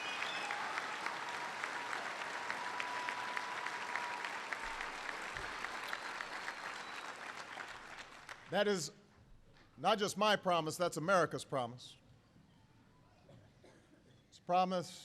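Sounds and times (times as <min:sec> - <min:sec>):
audience applauding: 0:00.0 - 0:08.5.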